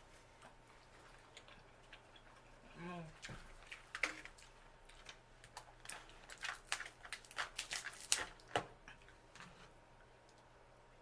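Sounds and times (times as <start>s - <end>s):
wet chewing smacks: 0.4s - 2.6s.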